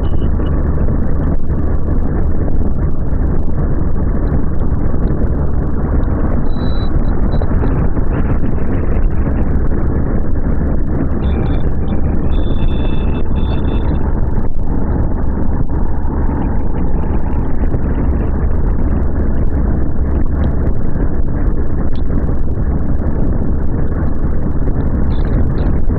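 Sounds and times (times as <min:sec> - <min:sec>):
motorcycle engine drone: 0:00.0 - 0:25.9
wind buffeting microphone: 0:00.0 - 0:25.9
wind rush: 0:00.0 - 0:25.9.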